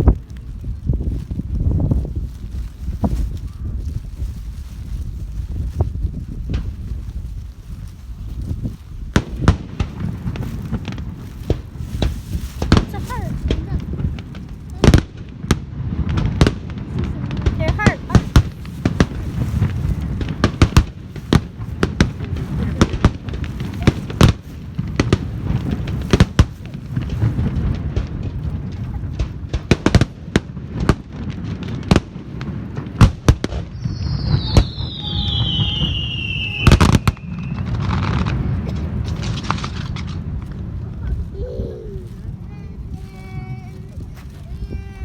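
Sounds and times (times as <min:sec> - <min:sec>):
fireworks bangs and crackles: 0:00.0 - 0:45.0
falling firework whistle: 0:33.5 - 0:38.3.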